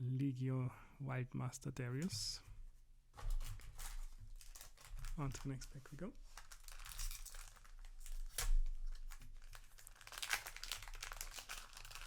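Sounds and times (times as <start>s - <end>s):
wrapper tearing and crinkling: 3.4s - 12.0s.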